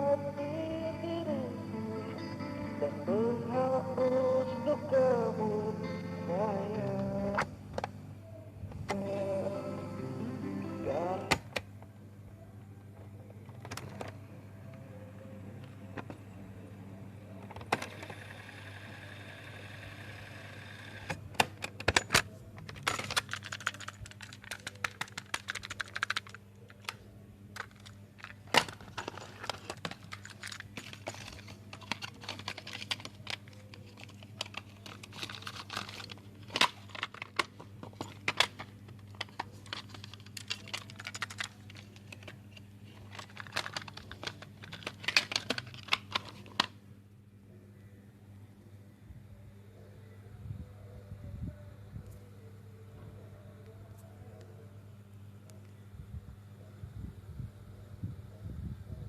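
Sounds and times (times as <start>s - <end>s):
cassette tape clicks and rattles: 21.4s - 27.0s, 27.6s - 42.4s, 43.0s - 46.7s.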